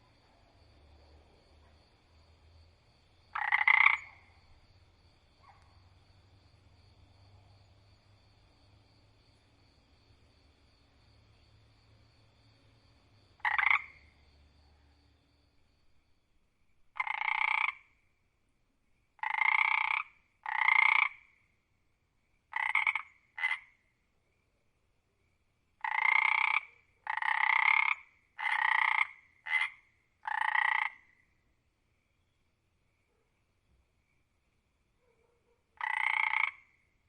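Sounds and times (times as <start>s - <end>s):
frog croaking: 3.1s - 6.0s, 13.4s - 14.4s, 16.9s - 18.0s, 19.2s - 21.4s, 22.5s - 23.9s, 25.8s - 31.3s, 35.8s - 37.0s.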